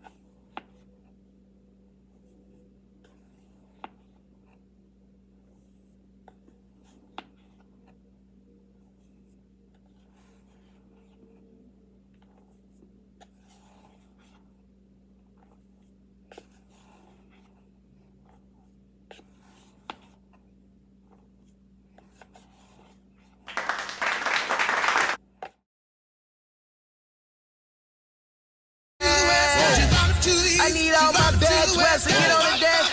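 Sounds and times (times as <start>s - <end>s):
scratchy handling sounds: 8.7s - 11.5s.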